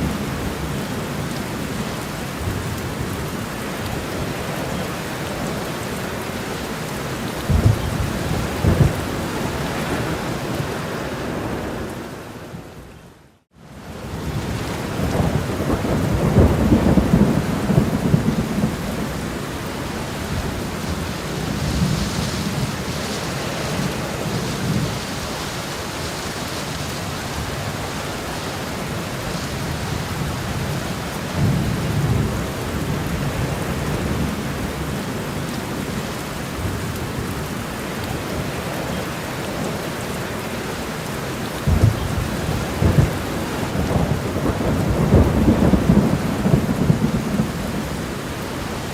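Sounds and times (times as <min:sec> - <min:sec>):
steady rain falling: 0:00.0 - 0:48.9
low rolls of thunder: 0:07.4 - 0:11.8, 0:14.2 - 0:19.4, 0:41.7 - 0:48.1.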